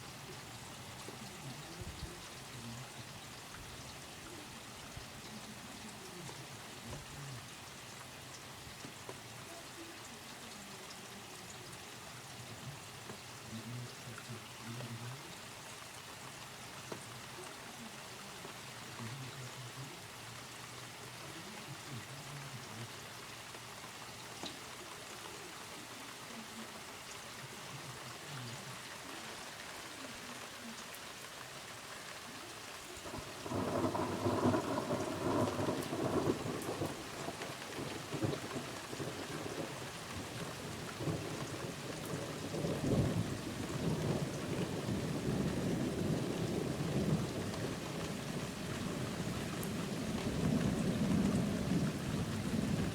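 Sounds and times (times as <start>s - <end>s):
steady rain: 0.0s - 52.9s
distant thunder rumbling: 33.0s - 52.9s
loud roll of thunder: 33.1s - 52.9s.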